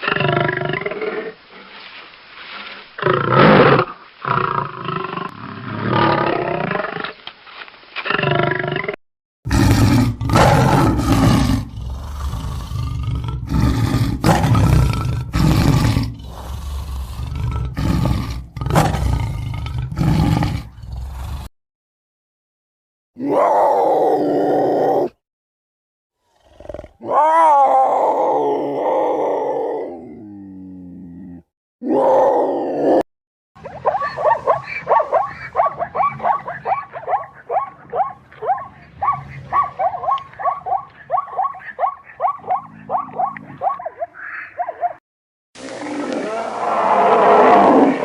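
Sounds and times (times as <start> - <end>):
animal roars: 8.1 - 21.5, 23.2 - 25.2, 26.3 - 33.0, 45.6 - 48.0.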